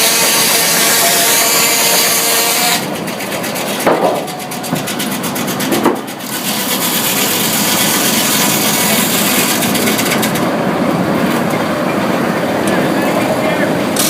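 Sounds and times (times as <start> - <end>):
sawmill saw cutting log: 0.0 - 10.6, 13.8 - 14.0.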